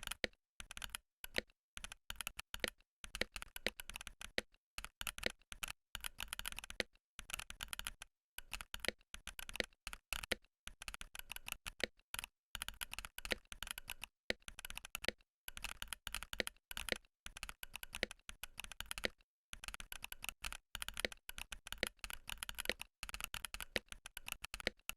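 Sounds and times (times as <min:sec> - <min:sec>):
mechanical keyboard typing: 0:00.0 - 0:24.9.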